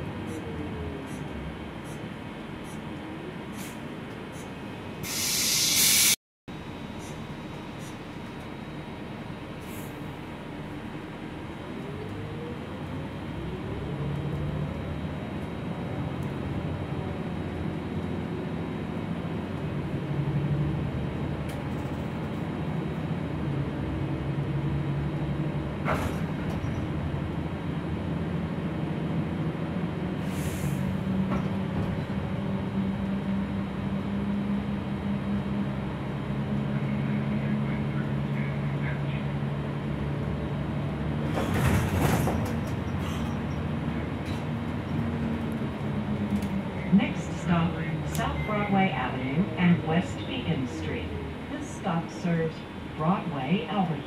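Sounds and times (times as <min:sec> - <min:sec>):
bus drivetrain drone and whine: 0:00.0 - 0:54.0
short hiss: 0:05.0 - 0:06.2.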